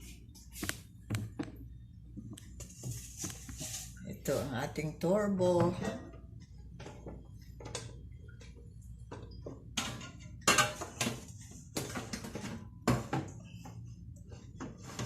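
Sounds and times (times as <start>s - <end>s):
kitchenware clinks and knocks: 9.1s - 13.4s.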